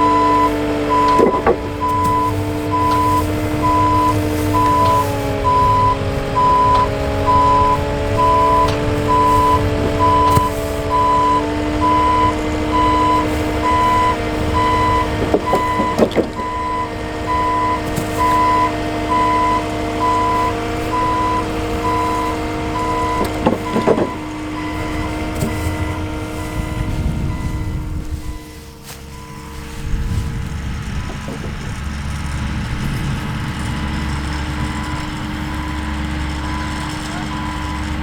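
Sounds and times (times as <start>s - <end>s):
reversing alarm beeping: 0.0s - 31.3s, 34.5s - 38.0s
vehicle engine running: 0.0s - 38.0s
knocks: 13.9s - 16.9s, 23.0s - 25.8s.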